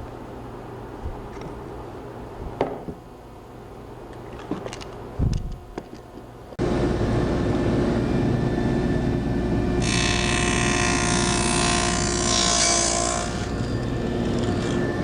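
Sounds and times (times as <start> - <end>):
knocks: 2.6 - 3.0
blade cutting wood: 9.8 - 14.9
woodworking power tool running: 9.8 - 15.0.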